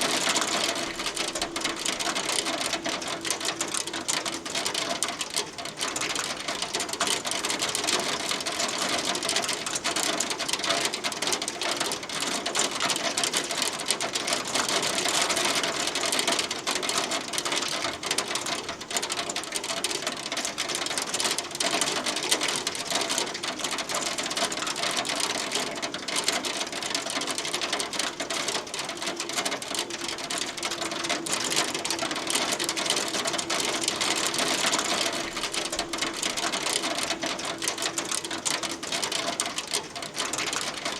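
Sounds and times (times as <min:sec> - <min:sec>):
hailstones pelting a hard surface: 0:15.6 - 0:40.9.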